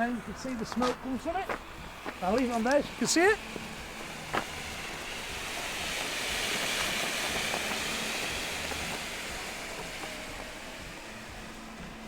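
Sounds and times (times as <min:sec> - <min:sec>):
smoke grenade hissing: 0:00.0 - 0:12.0.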